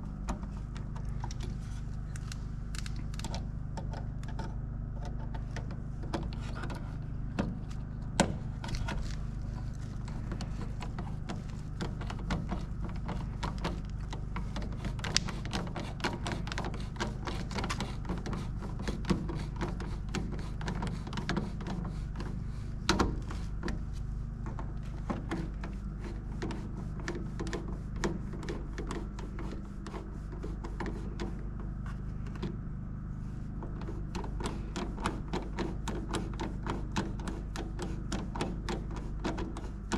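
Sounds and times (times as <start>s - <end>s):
steady low hum: 0.0s - 39.9s.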